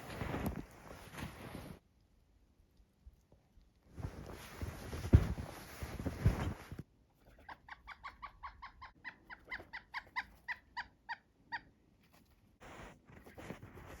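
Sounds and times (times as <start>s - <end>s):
rustling: 0.0s - 1.9s, 3.2s - 7.6s, 11.9s - 14.0s.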